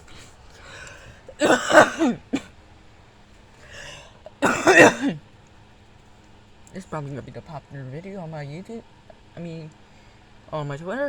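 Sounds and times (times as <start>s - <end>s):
person coughing: 0.7s - 2.5s, 3.7s - 5.2s.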